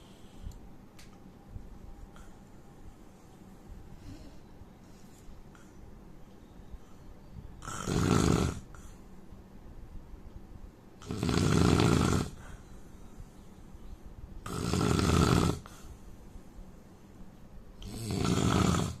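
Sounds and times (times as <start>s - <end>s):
man snoring: 7.6s - 8.8s, 11.0s - 12.4s, 14.4s - 15.8s, 17.8s - 19.0s.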